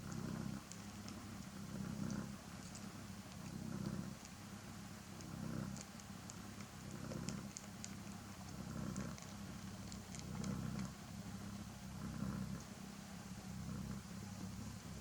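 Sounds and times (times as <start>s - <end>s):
cat purring: 0.0s - 15.0s
kittens suckling clicks: 0.1s - 4.4s, 5.1s - 11.0s.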